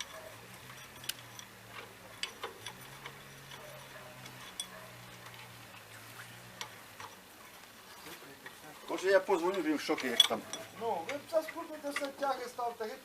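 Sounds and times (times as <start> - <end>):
metallic clinks of hand tools: 0.0 - 5.6, 8.9 - 12.3.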